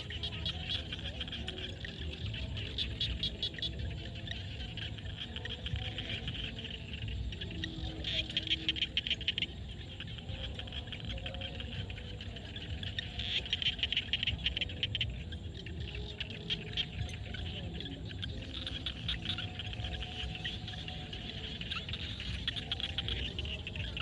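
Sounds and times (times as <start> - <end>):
frogs calling: 0.0 - 24.0.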